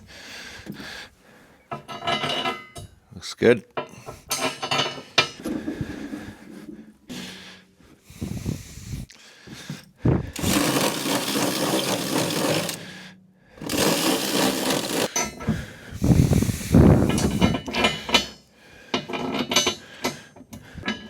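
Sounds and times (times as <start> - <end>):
power tool running: 10.3 - 13.0, 13.6 - 15.3.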